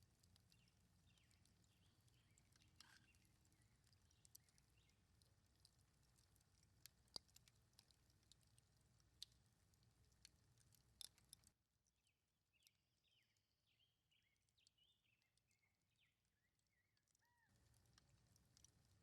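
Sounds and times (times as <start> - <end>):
faint birdsong chirps: 0.3 - 5.3, 12.0 - 17.7.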